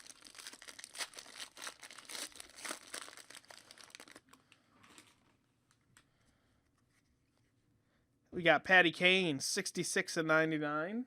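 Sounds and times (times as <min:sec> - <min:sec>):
plastic wrappers crinkling: 0:00.0 - 0:05.8.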